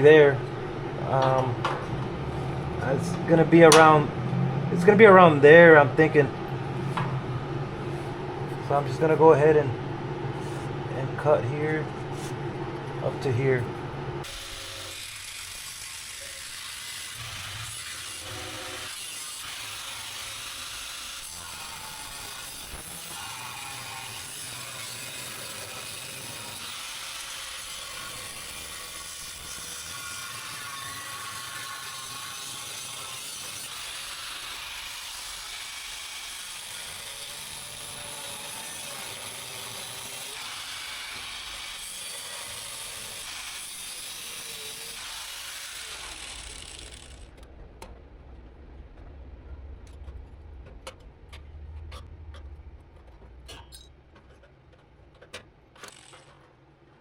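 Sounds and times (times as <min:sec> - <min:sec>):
power tool cutting sheet metal: 0:14.2 - 0:47.4, 0:55.8 - 0:56.4.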